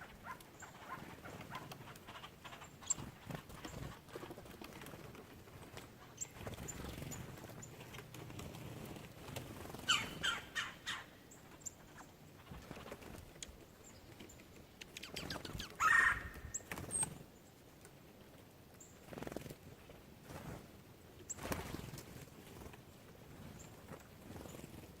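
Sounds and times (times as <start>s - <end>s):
birds calling: 0.0s - 4.2s, 9.6s - 13.0s, 13.7s - 17.2s.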